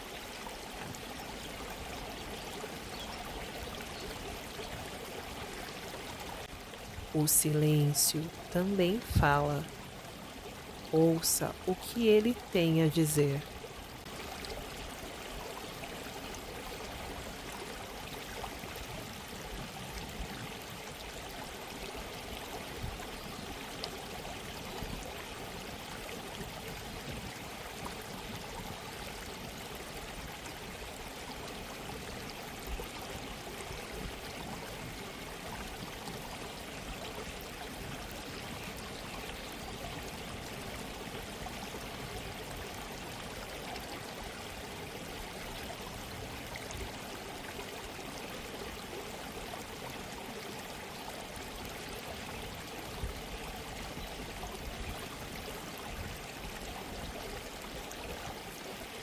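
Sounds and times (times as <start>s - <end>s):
stream babbling: 0.0s - 59.0s.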